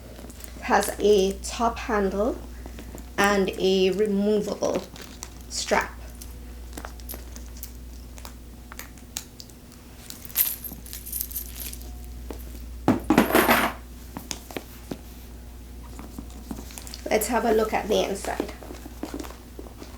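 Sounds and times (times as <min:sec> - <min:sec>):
handbag hardware clinking: 0:10.0 - 0:12.6.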